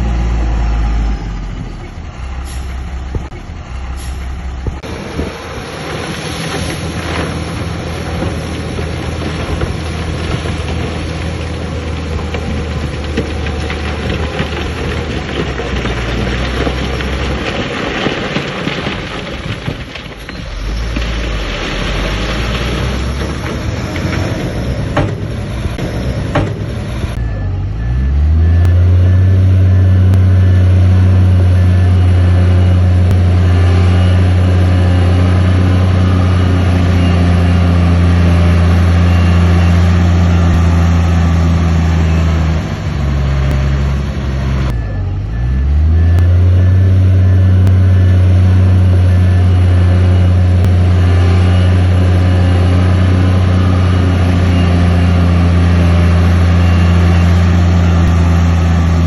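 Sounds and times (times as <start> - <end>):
heavy diesel engine under load: 0.0 - 59.0
reversing alarm beeping: 27.0 - 42.7, 43.4 - 59.0.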